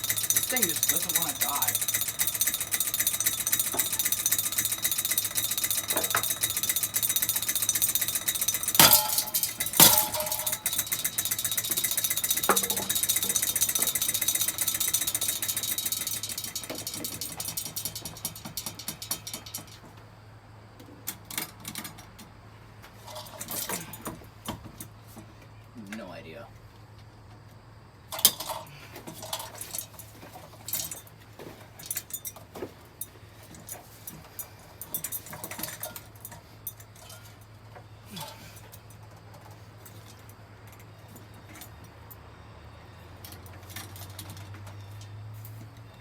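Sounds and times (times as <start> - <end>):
clinks and knocks: 0.0 - 20.0, 23.0 - 24.9, 28.1 - 42.2, 43.2 - 45.2
ceiling fan rattling: 0.0 - 20.1, 28.1 - 46.0
fan being hit: 7.1 - 13.7.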